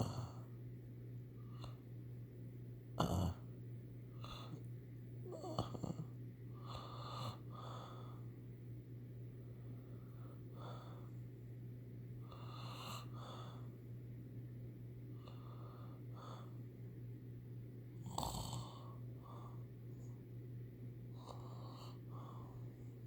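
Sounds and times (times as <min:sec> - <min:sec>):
person snoring: 0:00.0 - 0:00.4, 0:03.0 - 0:03.5, 0:05.3 - 0:06.1, 0:18.0 - 0:19.0
snort: 0:00.0 - 0:00.4, 0:03.0 - 0:03.5, 0:05.3 - 0:07.9, 0:18.0 - 0:19.0
steady low hum: 0:00.0 - 0:23.0.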